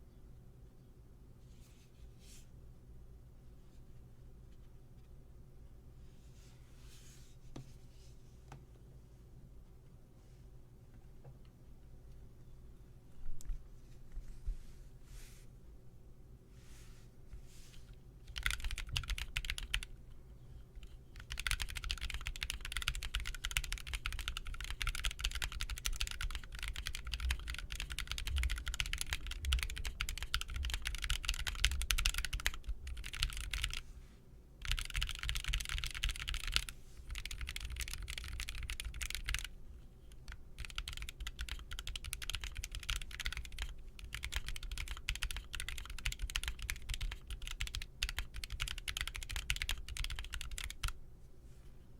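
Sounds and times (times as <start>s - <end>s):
mechanical keyboard typing: 18.3s - 19.9s, 21.2s - 33.8s, 34.6s - 39.5s, 40.3s - 51.0s.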